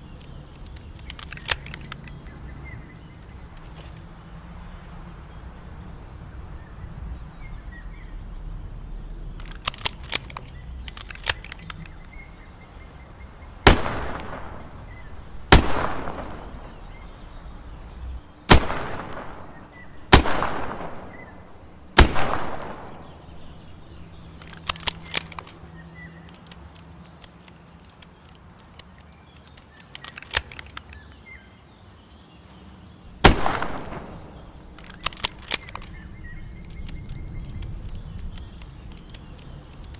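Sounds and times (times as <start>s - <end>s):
small metallic clicks: 0.0s - 2.5s, 3.1s - 4.2s, 9.3s - 13.0s, 13.7s - 31.3s, 33.3s - 39.9s
birds chirping faintly: 0.0s - 39.9s.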